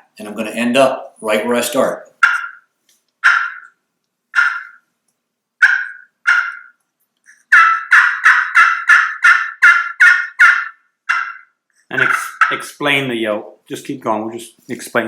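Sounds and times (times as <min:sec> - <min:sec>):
turkey call clucks: 0:02.2 - 0:04.9, 0:05.6 - 0:12.8.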